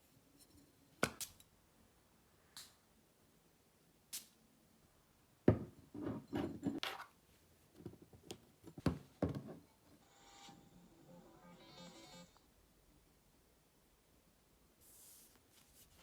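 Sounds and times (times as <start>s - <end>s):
objects knocking and thudding: 5.5s - 7.0s, 7.8s - 9.7s.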